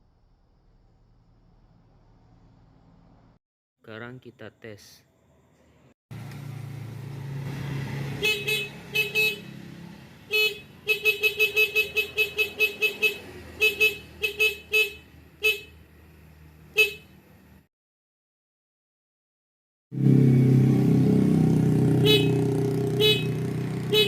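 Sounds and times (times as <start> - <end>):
motorcycle horn toots: 8.2 - 9.6, 10.3 - 15.8, 16.8 - 17.2, 21.8 - 24.0.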